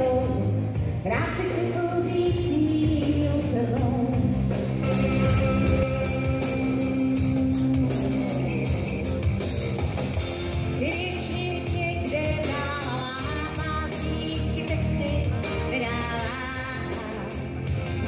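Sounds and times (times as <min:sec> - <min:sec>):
woman singing: 0:00.0 - 0:04.6, 0:10.8 - 0:17.4
live rock band playing: 0:00.0 - 0:18.0.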